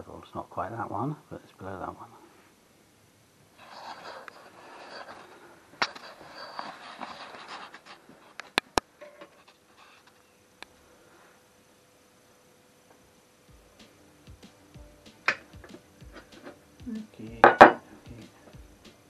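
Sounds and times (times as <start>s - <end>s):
rustling at a workbench: 3.5s - 11.6s.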